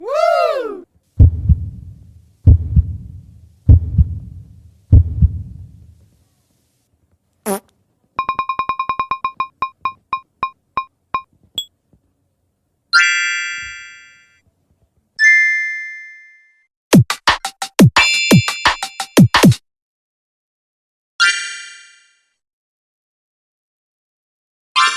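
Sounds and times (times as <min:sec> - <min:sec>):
electronic low booms: 0:01.2 - 0:05.9.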